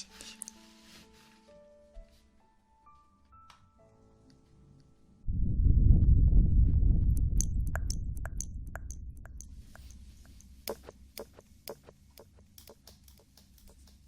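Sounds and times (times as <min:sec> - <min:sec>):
deep low rumble: 0:05.2 - 0:10.2
crisp clicks and taps: 0:07.2 - 0:14.0.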